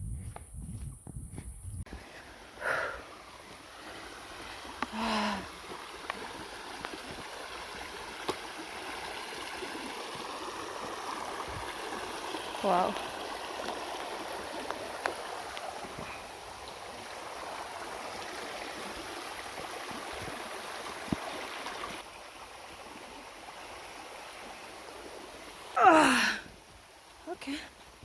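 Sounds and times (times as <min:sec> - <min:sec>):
stream flowing: 0:01.9 - 0:28.0
person exclaiming: 0:25.8 - 0:26.4.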